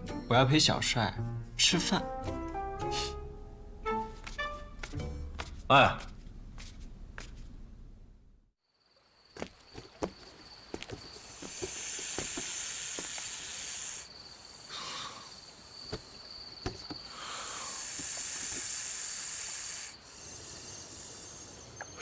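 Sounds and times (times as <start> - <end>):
loud hissing: 11.0 - 15.6, 17.0 - 22.0.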